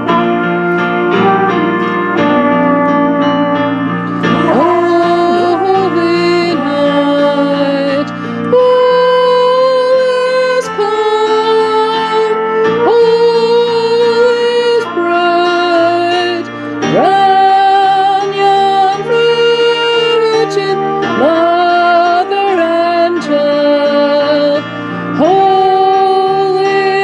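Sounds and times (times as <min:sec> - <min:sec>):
slow melody with sliding notes: 0:00.0 - 0:27.0
low sustained accompaniment: 0:00.8 - 0:08.7.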